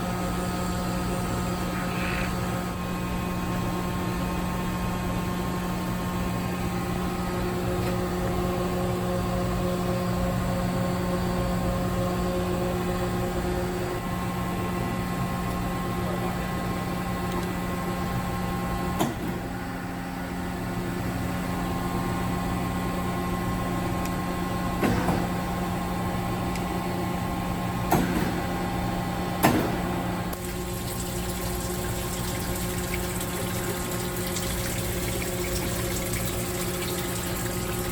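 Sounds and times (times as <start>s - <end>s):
machine humming: 30.3s - 37.9s.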